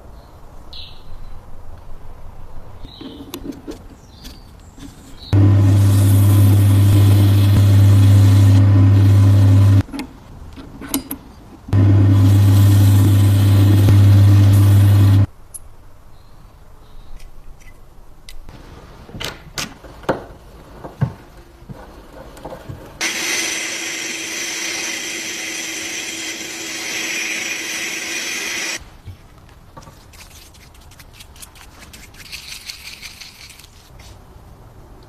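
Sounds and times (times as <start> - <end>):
electric power tool humming: 5.4 - 9.8, 11.8 - 15.3, 23.0 - 28.8
power tool hissing: 5.4 - 9.8, 11.8 - 15.3, 23.0 - 28.8.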